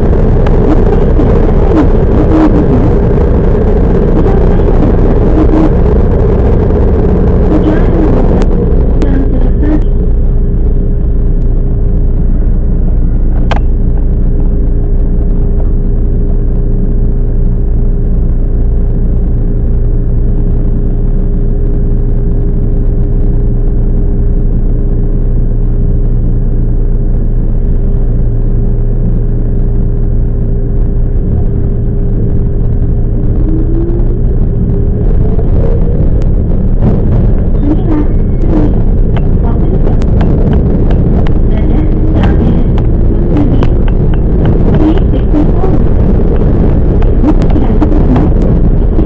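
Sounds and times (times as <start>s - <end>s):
train rumbling on track: 0.0s - 19.0s, 27.5s - 49.0s
rising tone: 28.8s - 49.0s.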